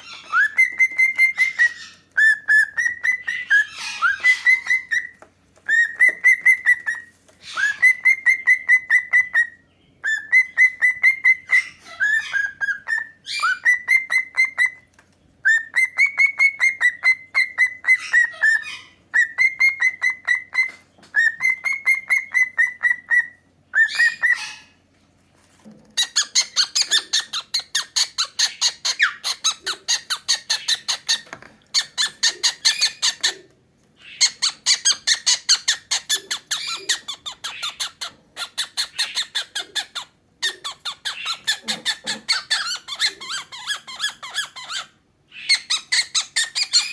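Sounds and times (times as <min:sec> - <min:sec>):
cockatiel chirping calls: 0:00.0 - 0:24.8, 0:26.0 - 0:46.9
harsh rapid bird chatter: 0:26.0 - 0:33.4.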